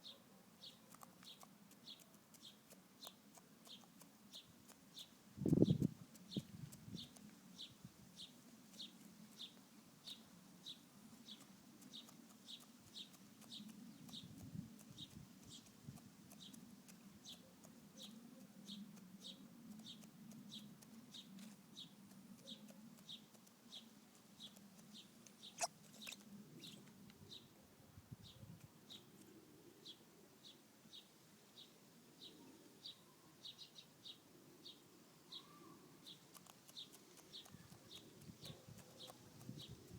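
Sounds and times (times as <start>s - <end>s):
thin high chirp: 25.4s - 26.8s.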